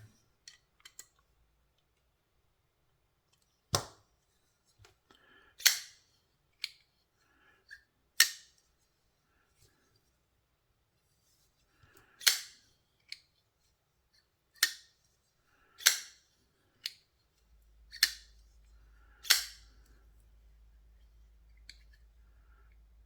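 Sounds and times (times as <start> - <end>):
knife blade snapping into lock: 19.2 - 19.6.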